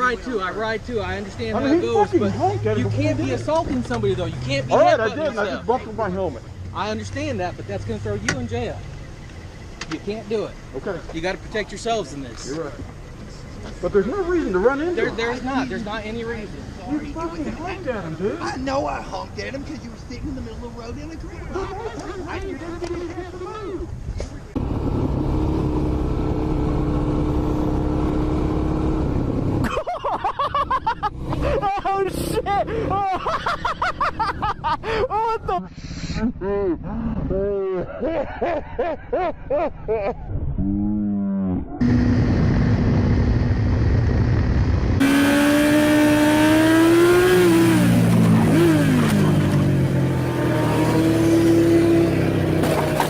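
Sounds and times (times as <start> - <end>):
voices: 0.0 - 24.6, 29.6 - 39.0
vehicle engine humming: 0.0 - 35.9, 41.8 - 53.0.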